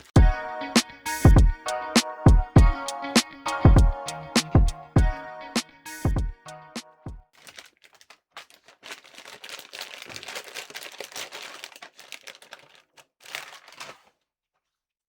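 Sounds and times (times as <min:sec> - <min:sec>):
crinkling rustling handling noise: 0:07.3 - 0:14.9.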